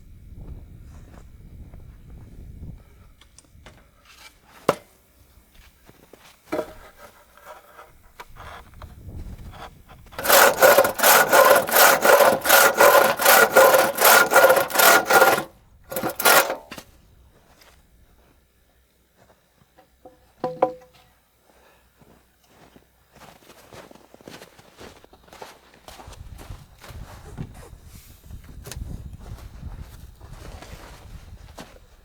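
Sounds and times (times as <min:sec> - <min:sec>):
hand saw cutting wood: 0:06.6 - 0:08.6, 0:09.6 - 0:16.8.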